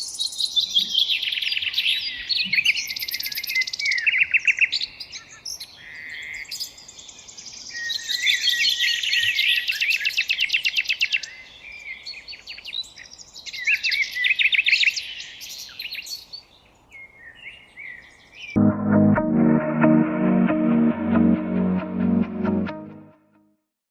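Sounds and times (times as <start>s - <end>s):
songbirds trilling and chirping: 0.0s - 18.6s.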